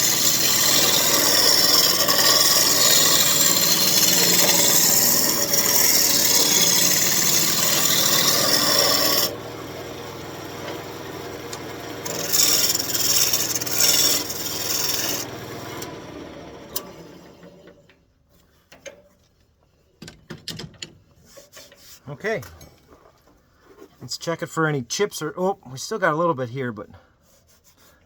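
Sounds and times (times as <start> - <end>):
lathe humming: 0.0 - 17.5
tool cutting wood on lathe: 0.0 - 17.6.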